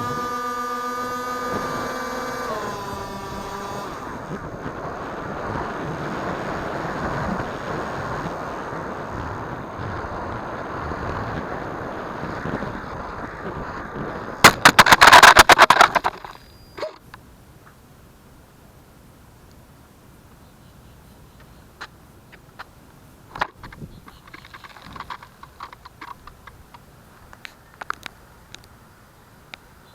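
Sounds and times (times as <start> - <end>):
electric motor whine: 0.0 - 14.4
knocks and rattles of impact: 14.4 - 16.4.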